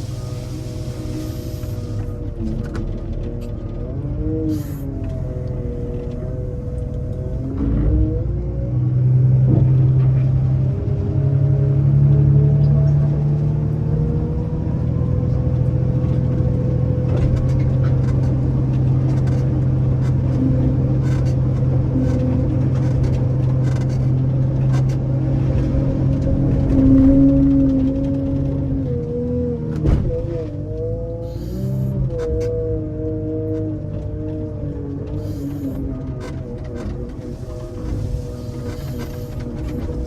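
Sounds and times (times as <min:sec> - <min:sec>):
diesel engine revving: 0:00.0 - 0:40.0
rattles and clicks: 0:17.0 - 0:30.5.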